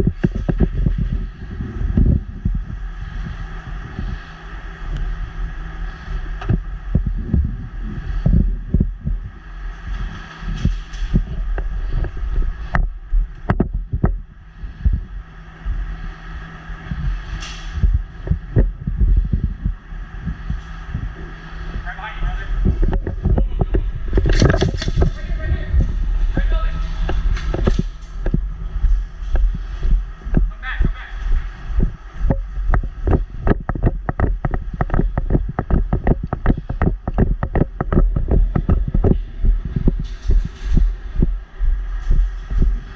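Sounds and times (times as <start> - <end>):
steady low rumble: 0.0 - 42.9
wind buffeting microphone: 0.0 - 42.9.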